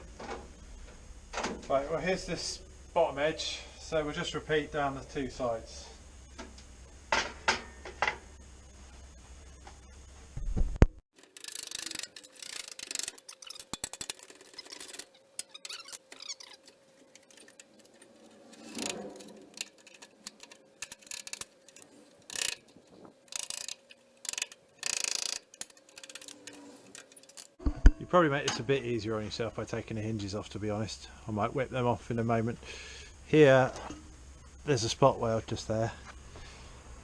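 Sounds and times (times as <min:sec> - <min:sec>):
metal clicks knocks and scrapes: 0:11.2 - 0:27.6.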